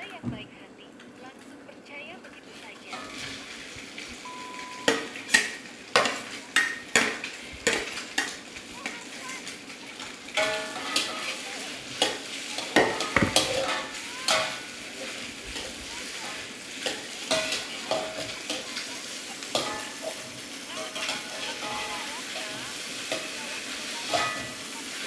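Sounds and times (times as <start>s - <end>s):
rice sizzling in a pan: 1.8s - 25.0s
metal spatula scraping a pan: 2.9s - 4.2s, 10.2s - 25.0s.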